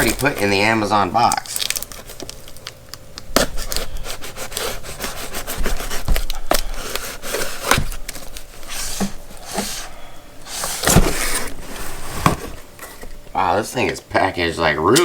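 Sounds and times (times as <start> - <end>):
cardboard rubbing and scraping: 0.0 - 1.1, 3.4 - 13.6.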